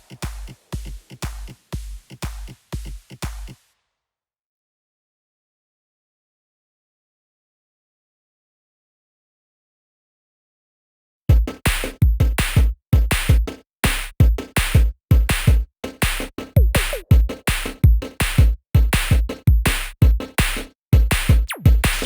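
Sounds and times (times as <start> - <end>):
electronic music with drum-machine beat: 0.0 - 3.6, 11.3 - 22.0.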